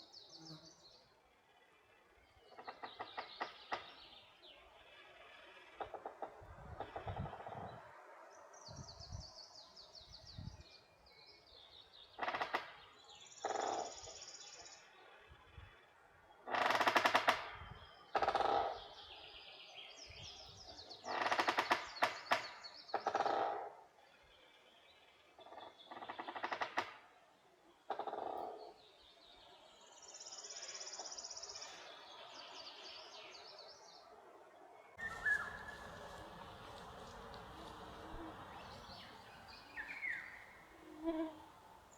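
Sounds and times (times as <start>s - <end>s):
birds trilling songs: 35.0s - 41.9s.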